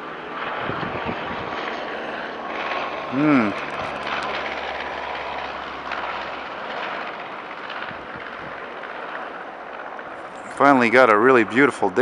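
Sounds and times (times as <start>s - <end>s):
aircraft engine rushing: 0.0s - 12.0s.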